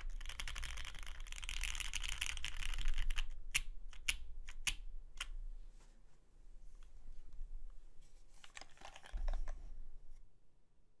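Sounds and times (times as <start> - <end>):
mechanical keyboard typing: 0.0 - 5.3.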